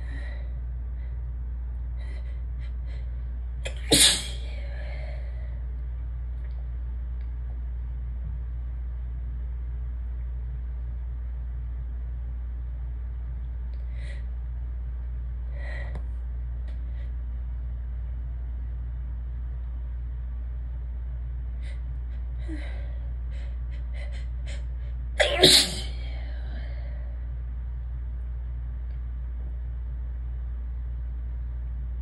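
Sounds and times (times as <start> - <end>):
low hum: 0.0 - 32.0
person sneezing: 3.7 - 4.6, 25.2 - 26.4.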